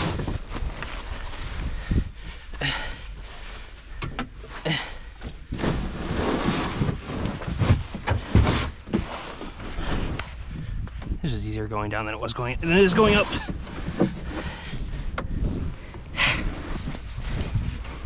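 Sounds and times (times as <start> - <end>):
wind rumble on microphone: 0.0 - 2.4, 5.3 - 18.0
kayak scraping over snow: 5.5 - 10.4, 12.6 - 18.0.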